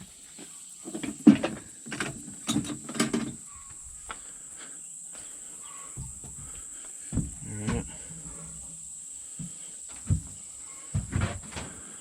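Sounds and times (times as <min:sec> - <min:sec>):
felling wedges knocking together: 0:07.1 - 0:08.8.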